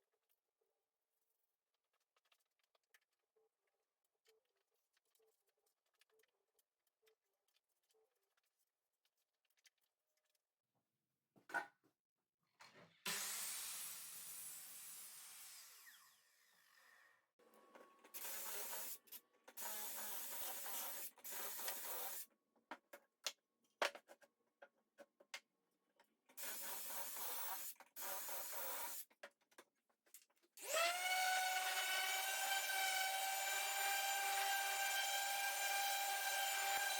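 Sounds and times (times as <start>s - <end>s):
rasping woodworking tool: 30.6s - 36.9s.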